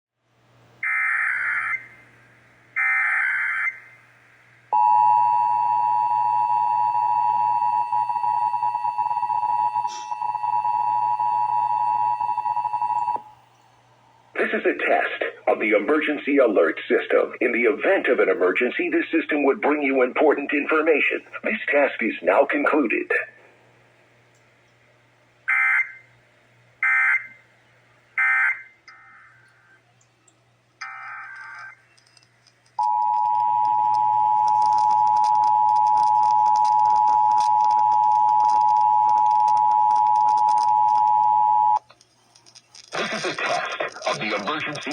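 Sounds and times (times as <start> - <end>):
screechy digital data tones: 30.8 - 32.2
two-tone attention signal: 32.8 - 41.8.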